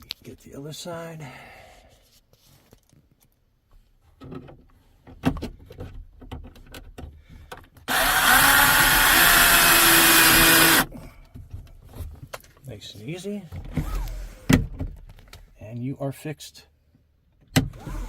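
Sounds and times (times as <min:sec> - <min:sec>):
screw gun running: 0:07.9 - 0:10.9.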